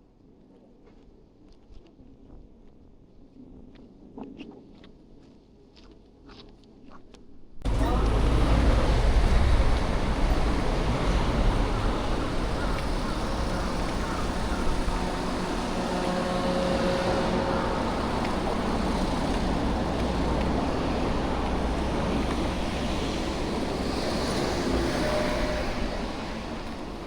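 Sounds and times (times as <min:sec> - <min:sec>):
road traffic passing: 0:07.7 - 0:27.0.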